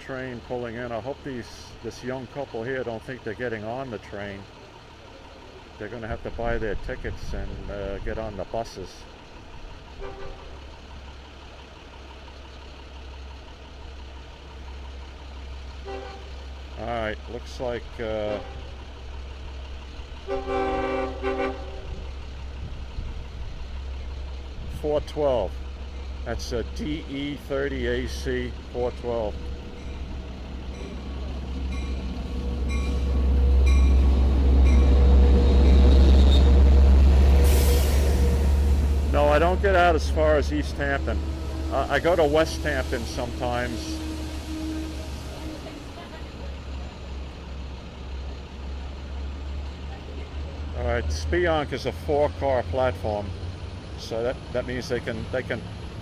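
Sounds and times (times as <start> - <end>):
diesel locomotive engine rumbling: 0.0 - 56.0
locomotive bell ringing: 25.1 - 46.8
high squeal: 28.7 - 39.8, 40.4 - 46.0.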